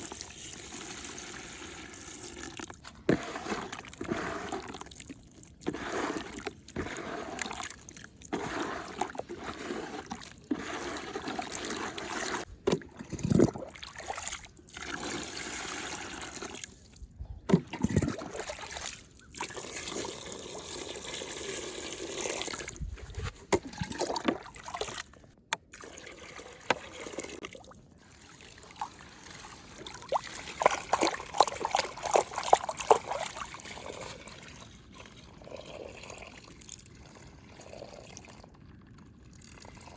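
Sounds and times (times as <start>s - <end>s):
muddy water trickling and sloshing: 0.0s - 39.9s
sharp little splashes: 27.5s - 34.6s.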